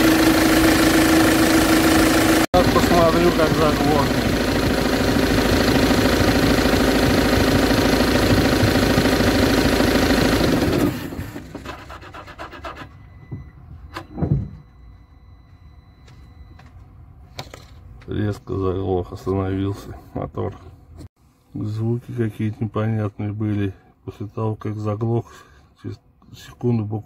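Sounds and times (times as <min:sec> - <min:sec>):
engine ticking: 0:00.0 - 0:11.6
van engine running: 0:00.0 - 0:11.8
dull thump: 0:13.2 - 0:14.7.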